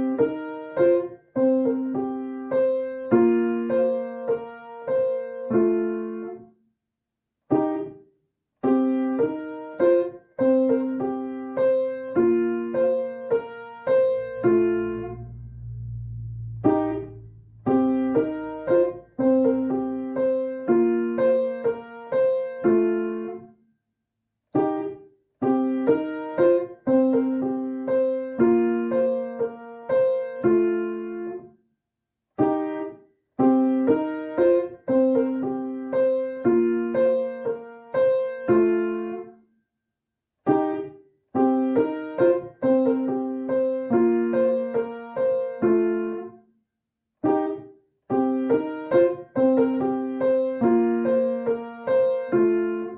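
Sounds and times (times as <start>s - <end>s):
piano melody: 13.9s - 21.7s.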